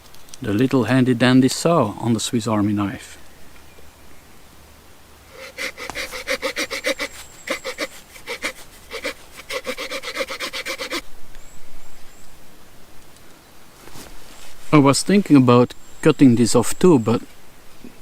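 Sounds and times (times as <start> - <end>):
saw blade cutting wood: 5.3 - 11.0.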